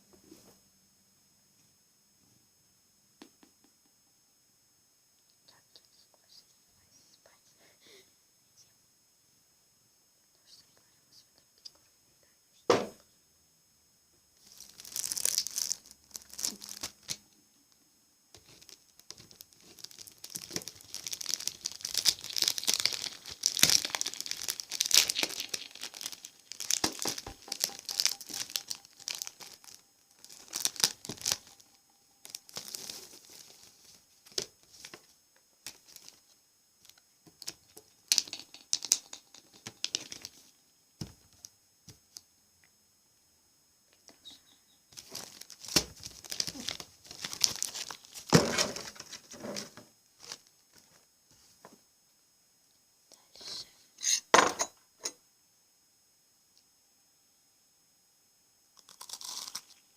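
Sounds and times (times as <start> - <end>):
plastic wrapping crinkling: 14.4 - 17.2, 18.4 - 40.5, 45.0 - 51.0.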